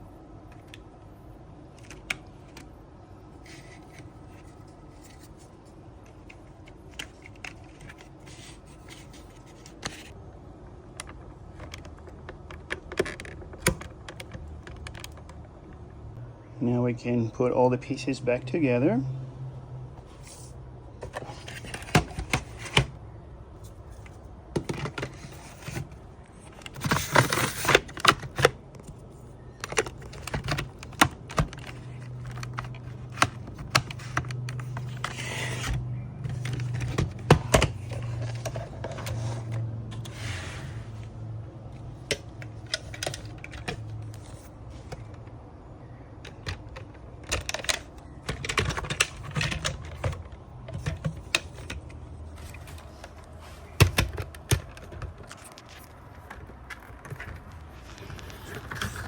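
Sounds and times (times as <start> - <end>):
low steady hum: 0.0 - 59.0
plastic parts clicking and knocking: 10.9 - 15.5, 24.0 - 40.0, 41.9 - 45.3, 46.1 - 59.0
plastic scraping: 23.6 - 41.1, 46.3 - 59.0.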